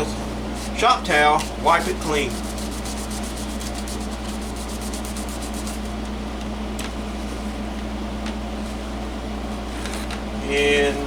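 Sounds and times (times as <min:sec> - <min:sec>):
towel rubbing a board: 0:00.6 - 0:05.9.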